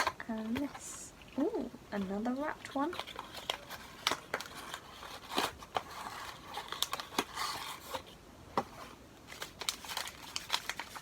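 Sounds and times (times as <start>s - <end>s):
paper wrapping crinkling: 0.0s - 11.0s.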